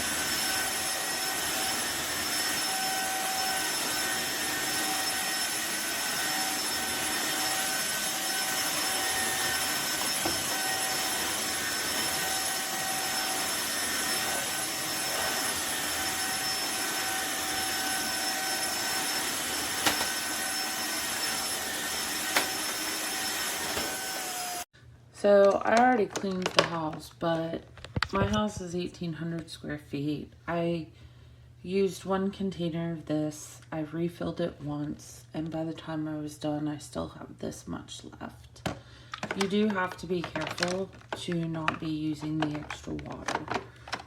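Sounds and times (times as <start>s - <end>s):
floor cleaner motor whine: 0.0s - 24.7s, 38.6s - 44.0s.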